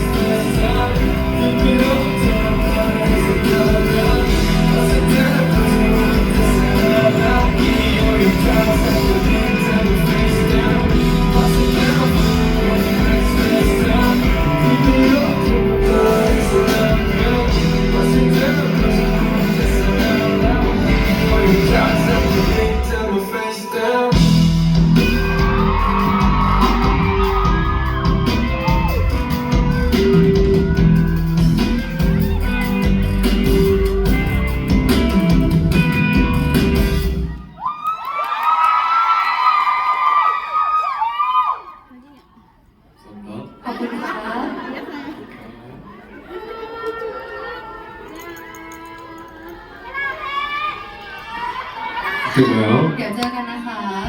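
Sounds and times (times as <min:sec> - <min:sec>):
male singer with amplified band: 0:00.0 - 0:37.0.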